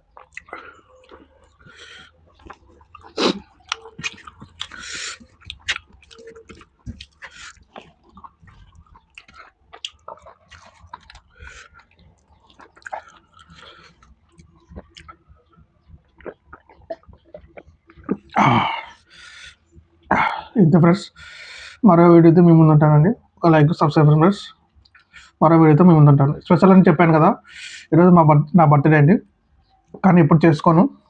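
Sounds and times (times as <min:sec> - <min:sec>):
person chewing with wet smacks: 0:00.0 - 0:20.2, 0:24.7 - 0:25.4.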